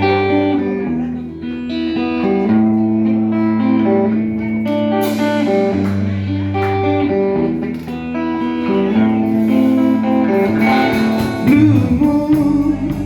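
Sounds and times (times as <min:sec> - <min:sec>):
band playing slow ballad: 0:00.0 - 0:13.0
cymbal hit: 0:05.0 - 0:06.3, 0:09.5 - 0:12.2.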